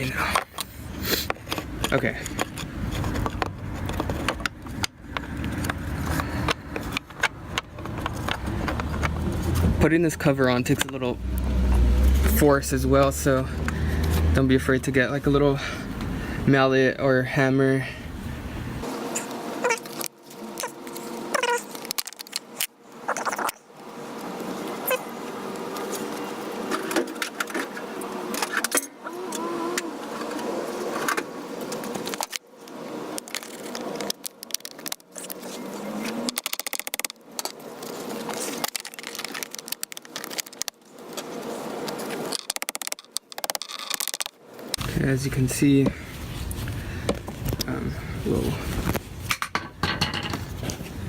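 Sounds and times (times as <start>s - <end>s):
plastic scraping: 0.2s - 11.1s, 33.1s - 45.0s.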